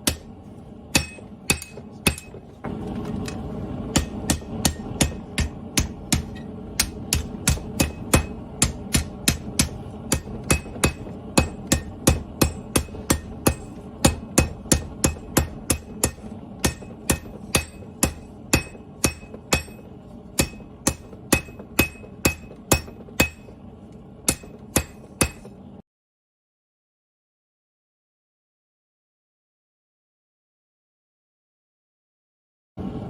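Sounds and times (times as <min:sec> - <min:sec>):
hammer striking steel on anvil: 0:00.0 - 0:02.4, 0:03.2 - 0:23.6, 0:24.2 - 0:25.6.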